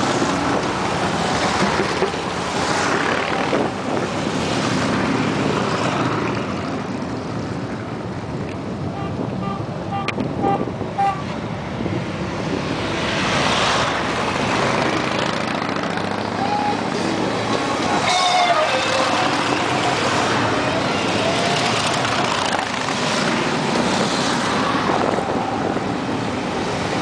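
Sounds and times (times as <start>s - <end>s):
motorcycles riding past: 12.8s - 25.6s
short horn toots: 18.0s - 19.4s.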